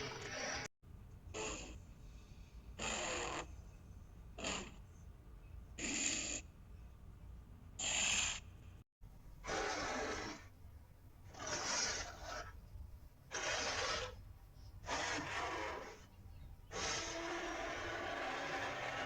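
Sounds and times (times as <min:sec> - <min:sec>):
short noisy creature calls: 0:01.4 - 0:01.8, 0:02.8 - 0:03.5, 0:04.4 - 0:04.8, 0:05.8 - 0:06.5, 0:07.8 - 0:08.4, 0:09.4 - 0:10.5, 0:11.3 - 0:12.6, 0:13.3 - 0:14.2, 0:14.8 - 0:16.1, 0:16.7 - 0:19.0.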